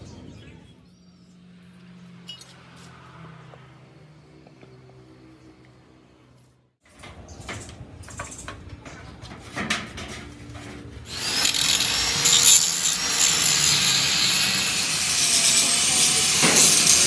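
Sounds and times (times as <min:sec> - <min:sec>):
metallic knocks and scrapes: 0:07.5 - 0:17.0
power tool running with hiss: 0:11.1 - 0:17.0.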